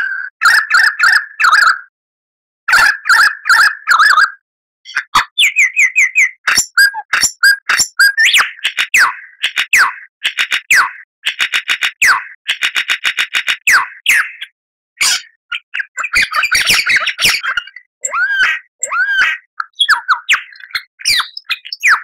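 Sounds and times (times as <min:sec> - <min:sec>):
lyrebird singing: 0:04.9 - 0:13.0, 0:13.6 - 0:22.0.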